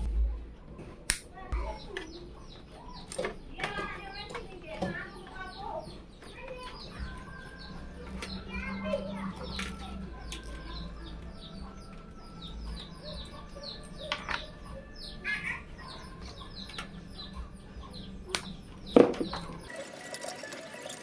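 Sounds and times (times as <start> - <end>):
birds chirping: 1.6 - 21.0
music: 6.8 - 21.0.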